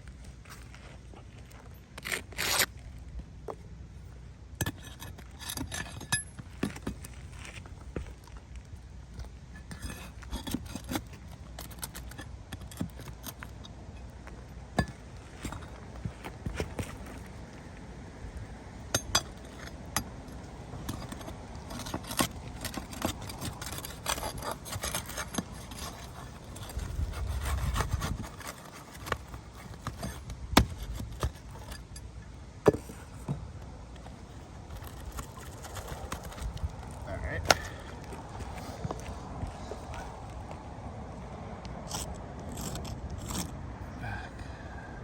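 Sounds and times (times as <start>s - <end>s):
scraping on roof shingles: 20.7s - 31.9s, 34.0s - 39.6s.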